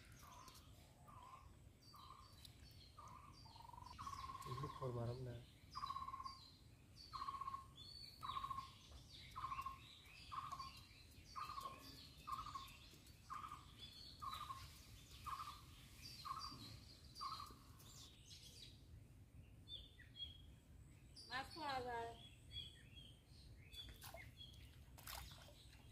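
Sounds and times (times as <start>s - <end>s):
birds chirping: 0.0s - 25.9s
bird calling a steady note: 0.2s - 17.9s.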